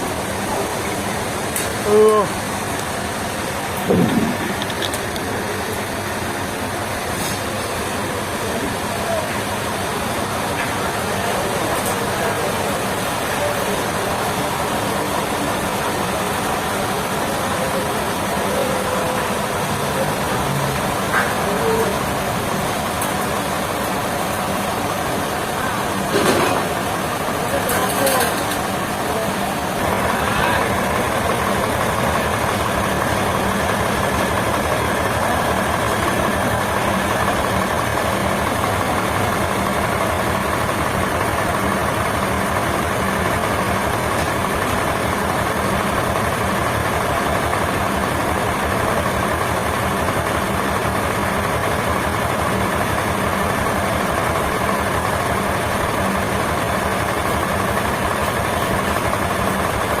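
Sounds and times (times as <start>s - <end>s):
heavy engine idling: 0.0s - 60.0s.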